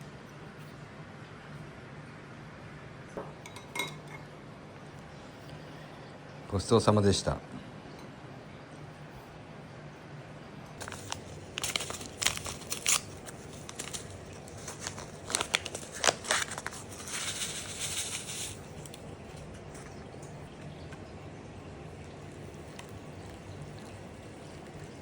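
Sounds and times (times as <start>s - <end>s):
crinkling rustles: 10.8s - 21.1s.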